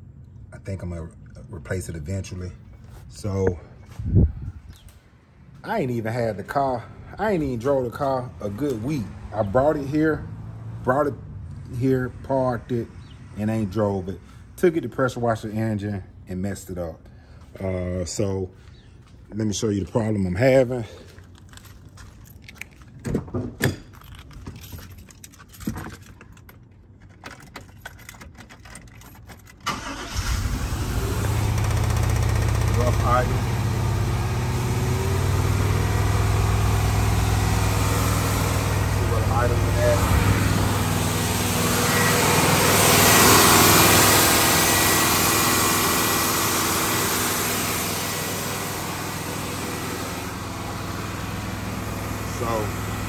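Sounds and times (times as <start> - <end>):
keys jangling: 23.6 - 29.6
car engine cranking and starting: 23.6 - 53.0.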